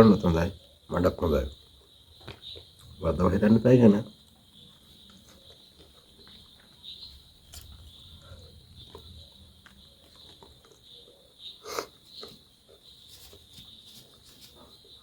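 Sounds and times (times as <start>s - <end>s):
insects chirring: 0.0s - 15.0s
person chewing food: 4.7s - 13.5s.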